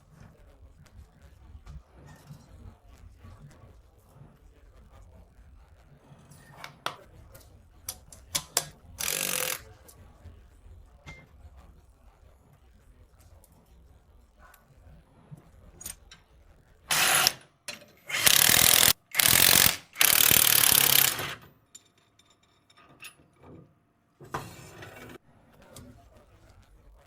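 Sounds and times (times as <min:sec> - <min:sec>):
ratchet spanner cranking: 0:08.6 - 0:09.6, 0:16.9 - 0:17.4, 0:18.1 - 0:21.4.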